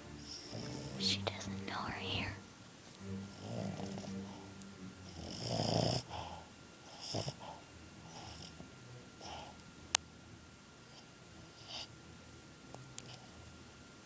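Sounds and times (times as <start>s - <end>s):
dog snoring: 0.2s - 1.2s, 3.3s - 4.4s, 5.0s - 8.6s.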